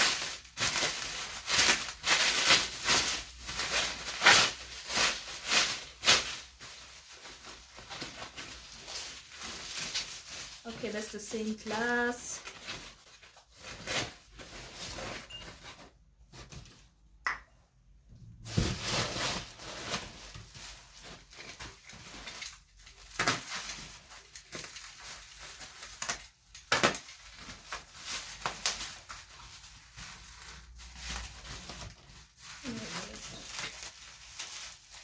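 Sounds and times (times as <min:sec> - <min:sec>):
wrap rustling: 0:00.0 - 0:16.5.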